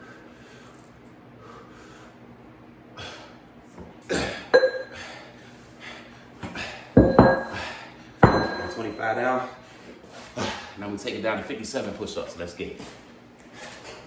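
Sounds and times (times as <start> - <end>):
man breathing hard: 0.0 - 2.3, 3.0 - 3.5, 4.3 - 8.2.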